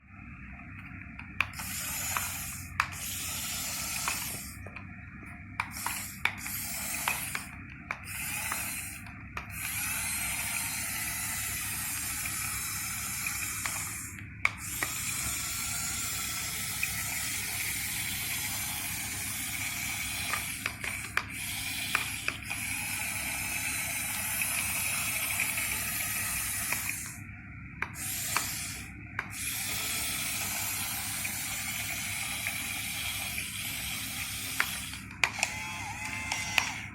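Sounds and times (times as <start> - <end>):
model excavator motors whirring: 0.5 - 36.9.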